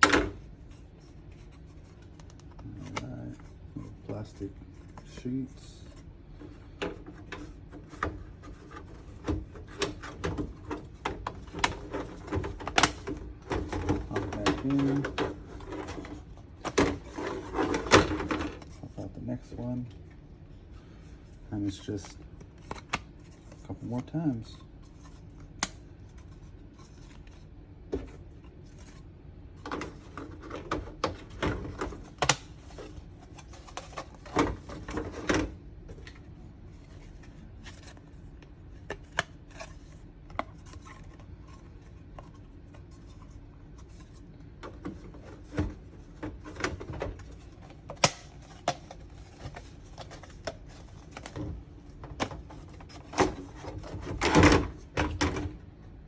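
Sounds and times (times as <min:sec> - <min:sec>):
plastic parts clicking and snapping: 0:06.8 - 0:18.7, 0:29.6 - 0:36.2, 0:44.6 - 0:55.6.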